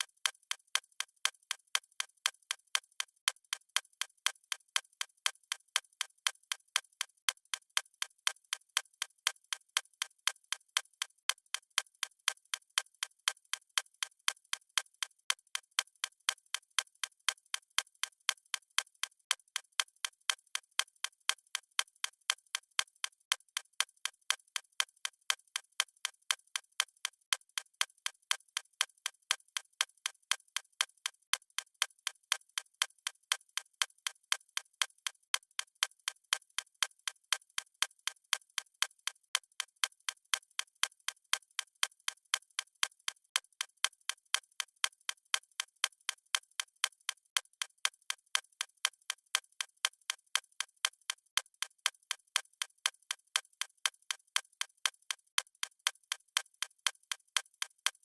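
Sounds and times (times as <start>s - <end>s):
watch ticking: 32.5s - 58.0s.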